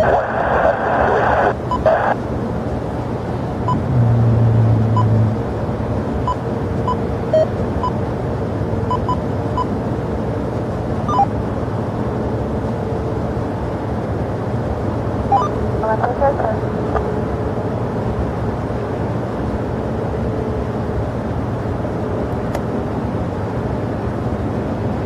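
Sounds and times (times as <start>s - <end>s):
jet aircraft rumbling: 0.4s - 25.0s
loud low hum: 3.5s - 6.3s
faint short beeps: 11.1s - 11.3s, 15.3s - 15.6s.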